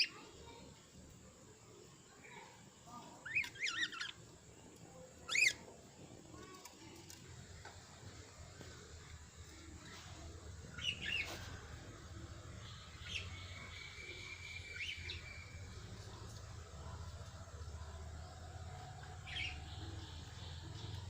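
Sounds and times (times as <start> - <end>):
budgerigars chirping and warbling: 3.3 - 4.2, 5.3 - 5.6
faint low hum: 5.7 - 21.0.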